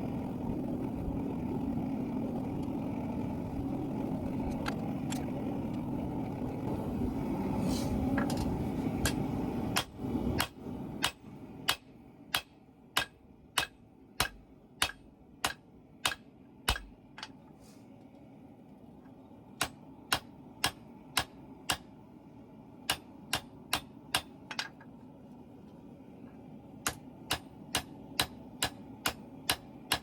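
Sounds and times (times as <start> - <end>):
steady rushing noise: 0.0 - 12.1
hammer blows on hot steel: 9.0 - 17.0, 26.8 - 30.0.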